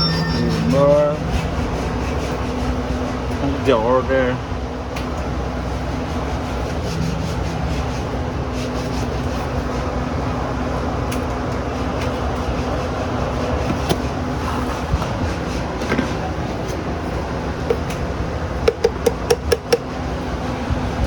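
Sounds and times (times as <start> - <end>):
low hum: 0.0 - 11.7.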